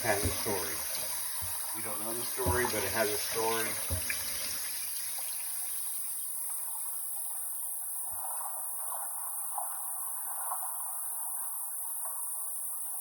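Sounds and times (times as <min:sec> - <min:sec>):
water running: 0:00.0 - 0:06.2.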